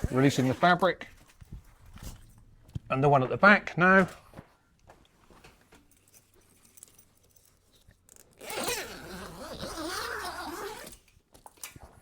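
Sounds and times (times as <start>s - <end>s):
faint handling sounds: 0.0s - 8.6s
zip being opened: 8.4s - 11.1s.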